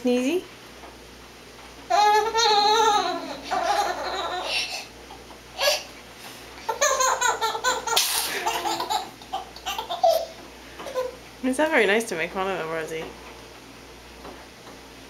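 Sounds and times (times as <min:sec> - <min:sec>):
young child laughing: 0:02.2 - 0:05.9, 0:06.6 - 0:11.2.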